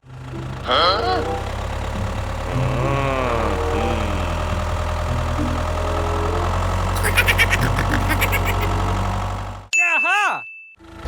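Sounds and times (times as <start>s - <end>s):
tractor engine idling: 0.1s - 7.0s.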